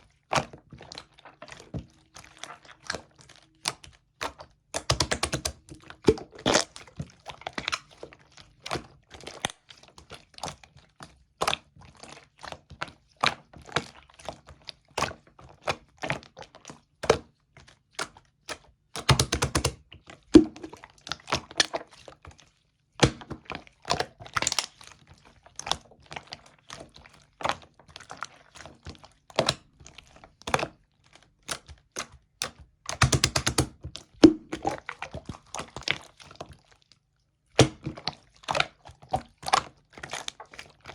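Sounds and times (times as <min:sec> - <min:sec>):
slime clicking and popping: 0:04.2 - 0:06.7, 0:19.0 - 0:19.8, 0:20.4 - 0:20.8, 0:32.0 - 0:34.9.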